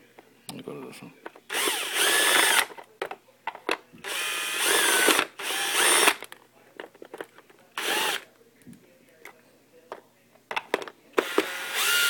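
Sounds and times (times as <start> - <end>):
power drill motor whine: 1.5 - 2.7, 4.1 - 6.2, 7.8 - 8.2, 11.2 - 12.0.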